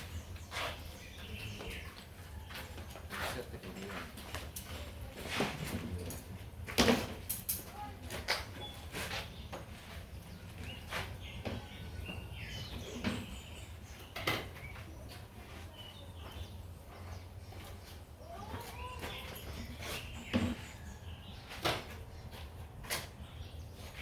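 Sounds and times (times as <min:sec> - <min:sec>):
bird chirps: 0:08.5 - 0:22.5.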